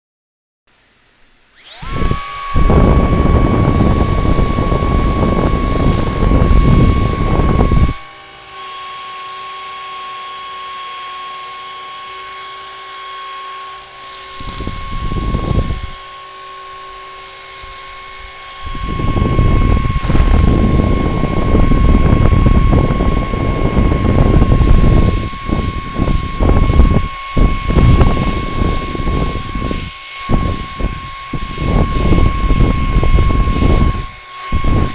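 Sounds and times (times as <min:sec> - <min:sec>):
small electric motor whine: 0:01.5 - 0:34.9.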